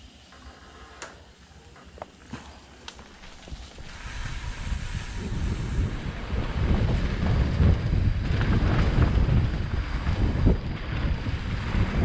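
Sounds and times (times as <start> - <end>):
bike rolling over rough trail: 1.7 - 12.0
wind buffeting microphone: 3.2 - 12.0.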